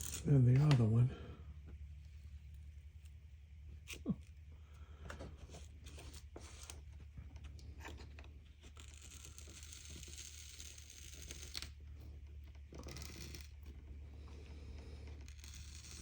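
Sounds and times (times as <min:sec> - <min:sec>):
steady low hum: 0:00.0 - 0:16.0
razor blade scraping glass: 0:15.2 - 0:16.0.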